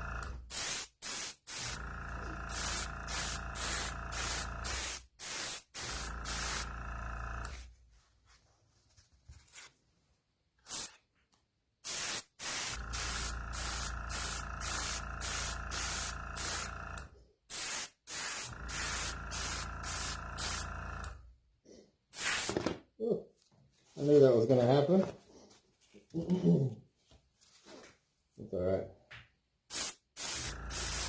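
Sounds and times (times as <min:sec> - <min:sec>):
airbrush spraying: 0:00.5 - 0:01.8, 0:02.5 - 0:06.8, 0:10.6 - 0:11.0, 0:11.8 - 0:16.8, 0:17.5 - 0:20.7, 0:22.1 - 0:22.6, 0:29.7 - 0:31.0.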